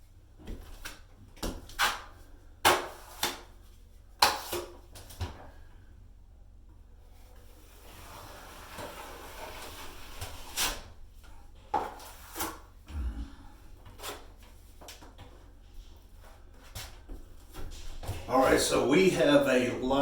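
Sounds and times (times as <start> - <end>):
knife scraping joint compound: 1.7 - 3.5, 4.2 - 4.8, 7.4 - 12.8, 13.8 - 15.1.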